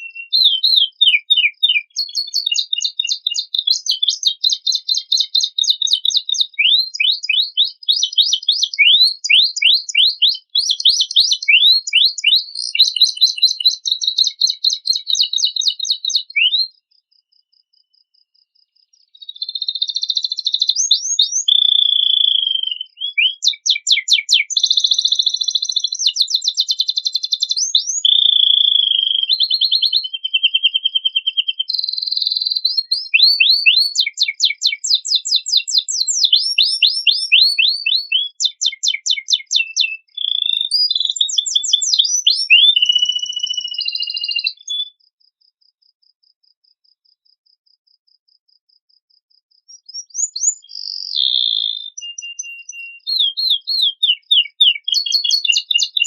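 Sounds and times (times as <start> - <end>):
canary singing trills: 0.0 - 18.0, 18.6 - 45.1, 49.6 - 56.0.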